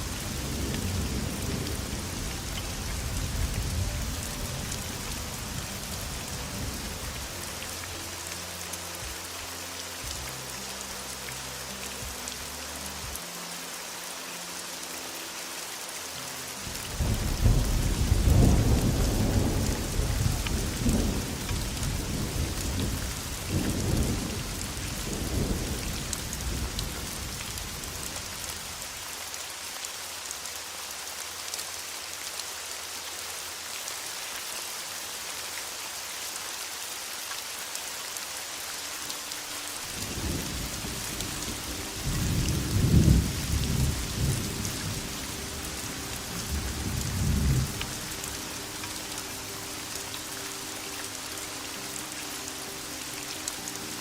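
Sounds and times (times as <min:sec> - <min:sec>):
heavy rain: 0:00.0 - 0:54.0
rolling thunder: 0:16.9 - 0:27.2, 0:39.9 - 0:45.8.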